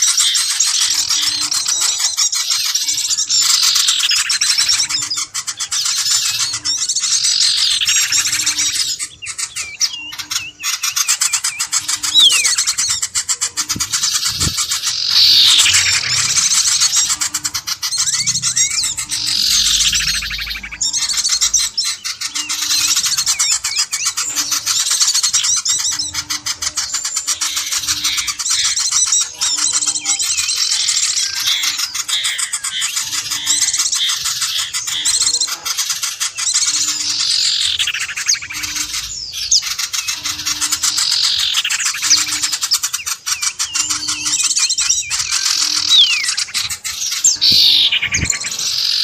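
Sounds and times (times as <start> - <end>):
small birds chirping and twittering: 0.0 - 49.0
loud falling bird call: 5.6 - 22.0, 37.1 - 49.0.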